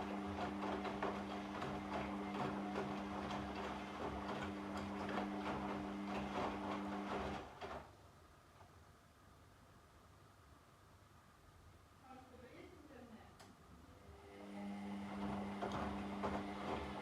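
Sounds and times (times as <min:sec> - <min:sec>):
washing machine motor hum: 0:00.0 - 0:07.9, 0:14.0 - 0:17.0.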